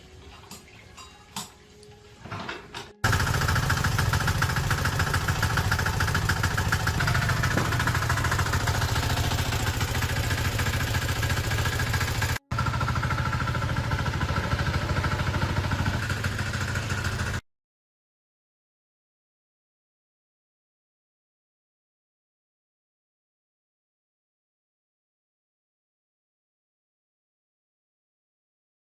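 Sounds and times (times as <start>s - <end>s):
engine running steadily: 3.0s - 17.4s.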